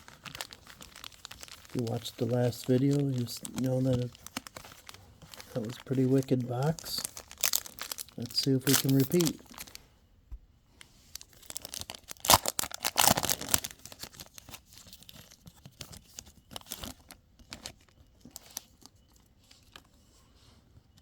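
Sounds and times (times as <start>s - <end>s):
card pack wrapper tearing: 0.0s - 9.8s, 11.2s - 16.0s
wrapper crinkling: 0.0s - 9.8s, 11.1s - 19.9s.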